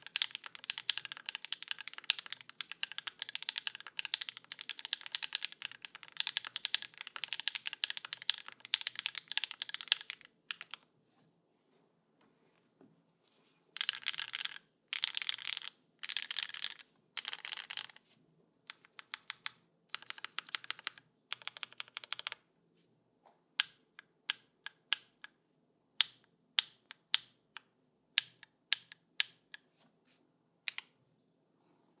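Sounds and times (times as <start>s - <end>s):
mechanical keyboard typing: 0.0s - 10.9s, 13.8s - 18.0s, 18.7s - 22.4s.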